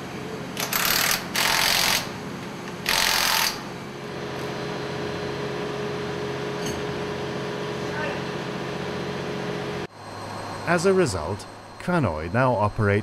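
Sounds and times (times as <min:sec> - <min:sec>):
machinery hum: 0:00.0 - 0:13.0.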